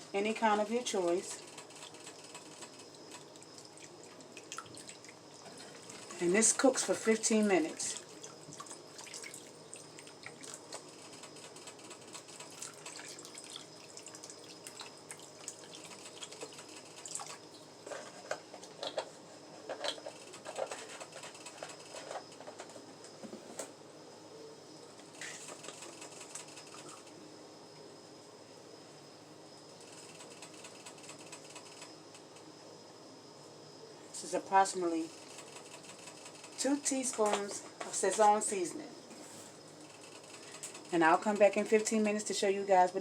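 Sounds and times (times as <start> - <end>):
faint watery kitchen sounds: 2.9 - 11.5, 12.2 - 23.5.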